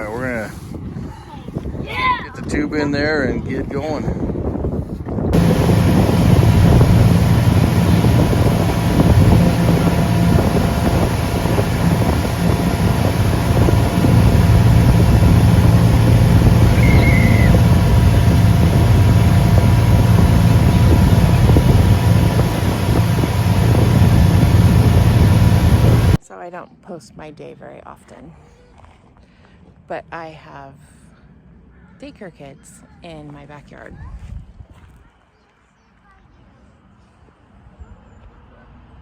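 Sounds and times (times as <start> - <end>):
wind on microphone: 0.0 - 26.2
motorboat engine running: 5.3 - 26.2.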